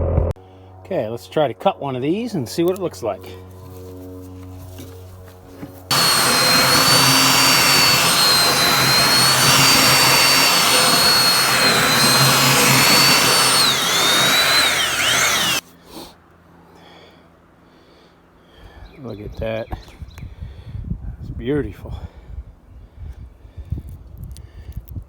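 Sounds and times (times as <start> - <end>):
power tool cutting cable whine: 5.9 - 15.6.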